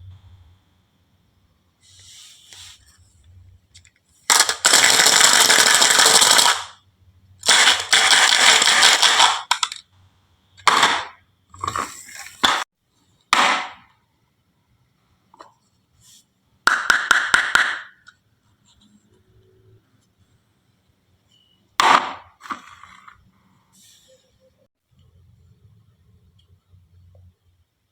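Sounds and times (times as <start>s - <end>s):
marbles rattling down wooden track: 4.3s - 6.7s, 7.5s - 9.8s.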